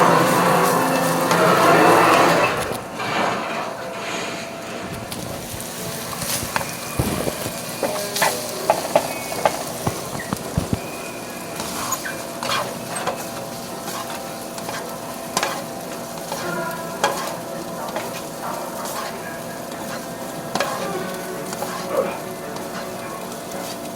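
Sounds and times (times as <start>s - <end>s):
food sizzling in a pan: 0.0s - 2.7s, 5.1s - 23.9s.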